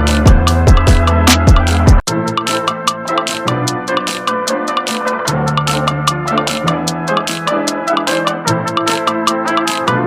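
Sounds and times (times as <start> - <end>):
electronic music with drum beat: 0.0 - 10.0.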